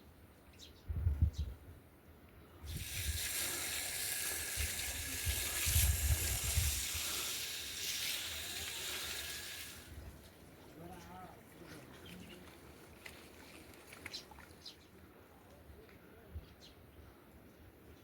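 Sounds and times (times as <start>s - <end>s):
water running hiss: 2.6s - 10.1s.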